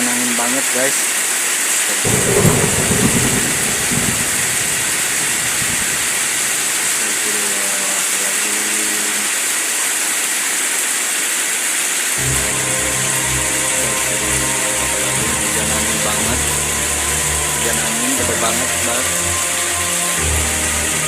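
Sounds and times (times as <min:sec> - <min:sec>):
heavy rain and wind: 0:00.0 - 0:21.0
low rumble of thunder: 0:02.1 - 0:07.2
low hum: 0:02.1 - 0:07.3.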